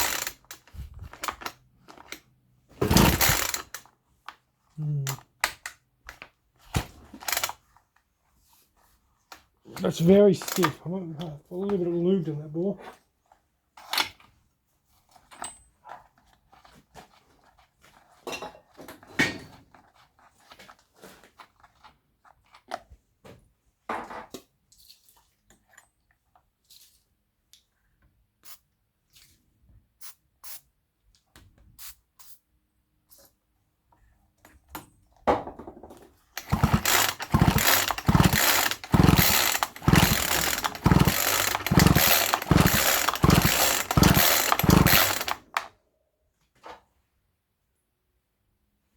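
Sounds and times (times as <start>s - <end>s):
mechanical ratcheting rattle: 0.0s - 1.5s, 2.8s - 3.8s, 9.8s - 10.8s, 36.4s - 45.6s
chainsaw being handled clicks: 0.0s - 2.2s, 2.9s - 3.8s, 7.2s - 7.6s, 9.8s - 10.8s, 36.4s - 45.7s.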